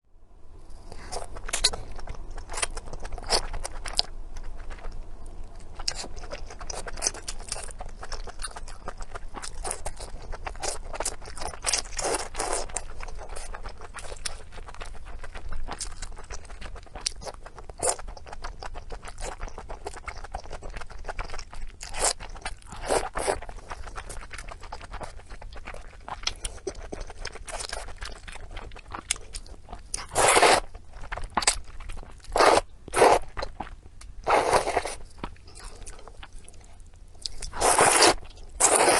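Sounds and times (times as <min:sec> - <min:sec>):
close chewing with wet clicks: 0:05.7 - 0:34.1.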